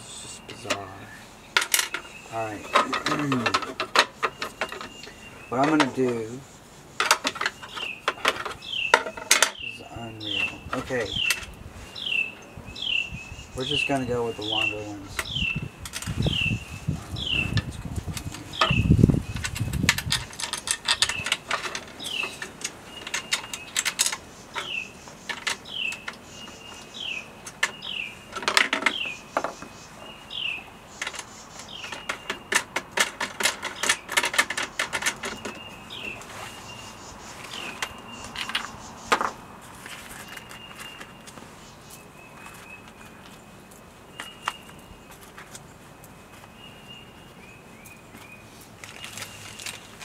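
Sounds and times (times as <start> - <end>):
bird chirping: 0.0 - 50.0
small metal parts clinking: 19.4 - 24.7.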